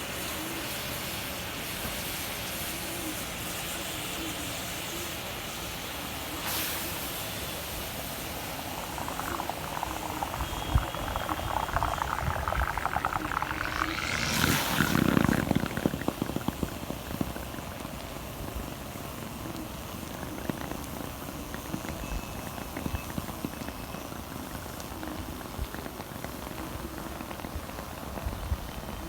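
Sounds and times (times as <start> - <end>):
steady hiss: 6.2 - 17.8
fizzing bubbling crackle: 6.2 - 29.0.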